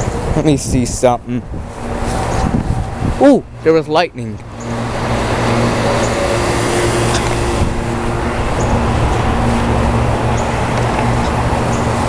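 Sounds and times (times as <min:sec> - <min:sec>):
strong wind: 0:00.0 - 0:12.0
low hum: 0:04.4 - 0:12.0.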